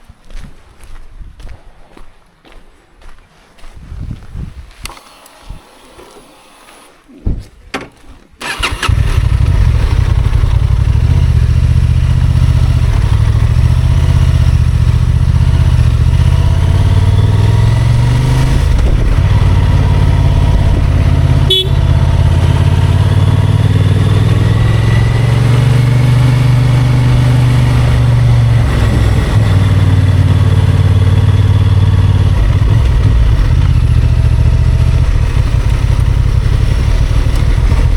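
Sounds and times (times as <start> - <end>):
motorcycle engine running: 8.4 - 37.9.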